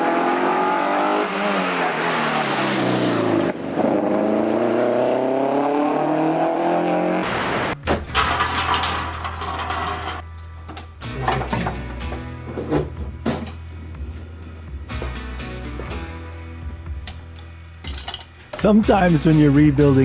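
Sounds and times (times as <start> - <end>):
rally car engine accelerating: 0.0 - 7.9.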